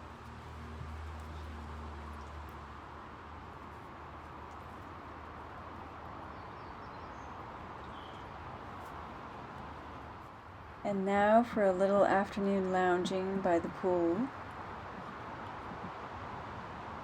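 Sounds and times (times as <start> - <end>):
outdoor background noise: 0.0 - 17.0.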